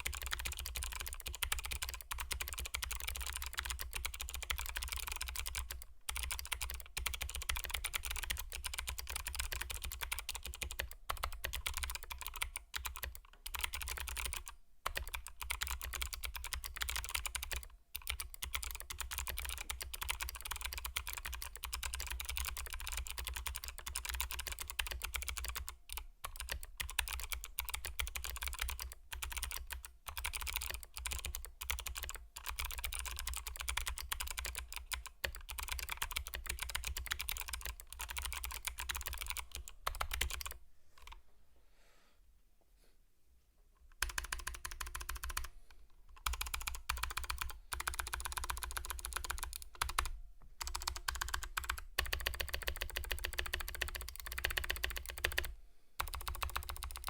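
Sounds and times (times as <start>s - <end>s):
mechanical keyboard typing: 0.0s - 41.2s, 43.9s - 45.5s, 46.1s - 57.0s.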